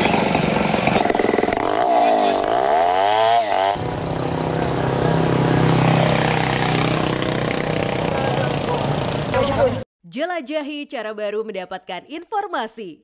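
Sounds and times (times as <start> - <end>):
small engine revving: 0.0 - 9.8.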